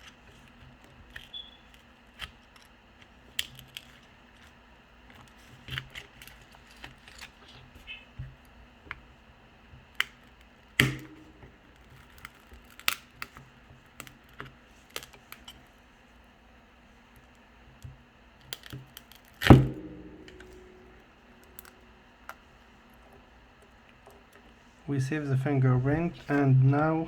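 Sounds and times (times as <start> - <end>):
loud ringing knocks: 10.9 - 11.6, 19.4 - 21.7.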